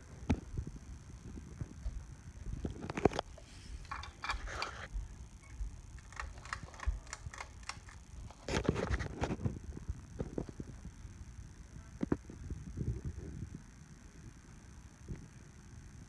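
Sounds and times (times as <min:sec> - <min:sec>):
ceiling fan clicking and rattling: 0:02.5 - 0:09.5.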